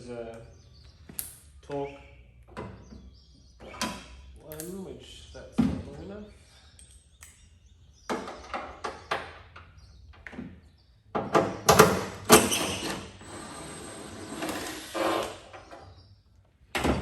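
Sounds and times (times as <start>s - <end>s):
metallic clicks of hand tools: 4.5s - 4.8s.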